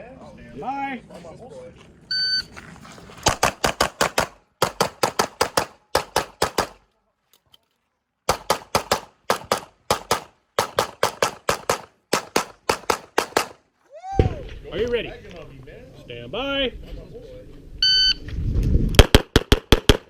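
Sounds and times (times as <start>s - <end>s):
rapid pistol shots: 3.3s - 6.8s, 8.3s - 13.6s, 19.0s - 20.0s.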